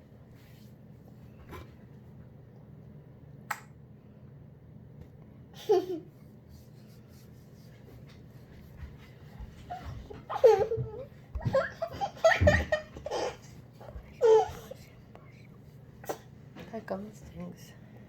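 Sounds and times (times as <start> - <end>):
young child laughing: 5.6 - 6.2, 9.7 - 13.5.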